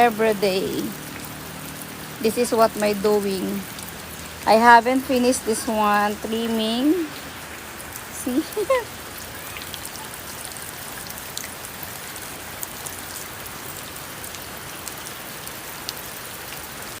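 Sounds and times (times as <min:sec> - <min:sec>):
steady rain hiss: 0:00.0 - 0:17.0
water drips on surfaces: 0:00.0 - 0:17.0.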